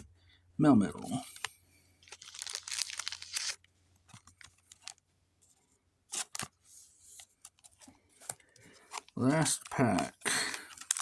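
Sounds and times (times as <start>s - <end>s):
foil wrapper rustling: 2.0s - 3.6s, 10.2s - 11.0s.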